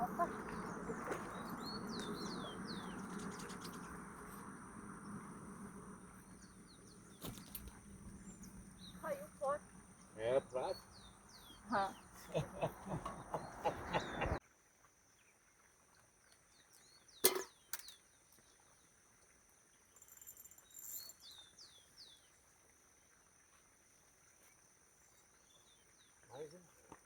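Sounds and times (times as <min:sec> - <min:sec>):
jumbled noises: 0:00.0 - 0:14.4
small birds chirping faintly: 0:00.0 - 0:27.0.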